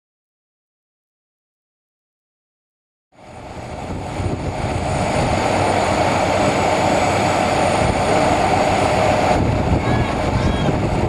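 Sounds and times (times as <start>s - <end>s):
jet engines at takeoff: 3.1s - 11.0s.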